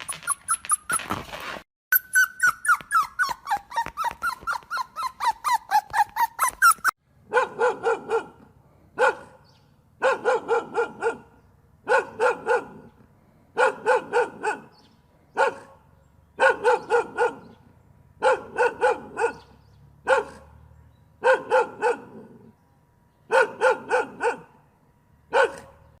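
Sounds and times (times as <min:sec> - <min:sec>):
dog yipping: 0:00.0 - 0:01.2, 0:01.9 - 0:08.3, 0:10.0 - 0:11.2, 0:16.4 - 0:17.6, 0:18.2 - 0:20.5, 0:21.2 - 0:22.2, 0:23.3 - 0:24.5, 0:25.3 - 0:25.9
dog barking: 0:07.3 - 0:12.9, 0:13.6 - 0:17.6, 0:18.2 - 0:20.6, 0:21.2 - 0:22.5, 0:23.3 - 0:24.6, 0:25.3 - 0:26.0.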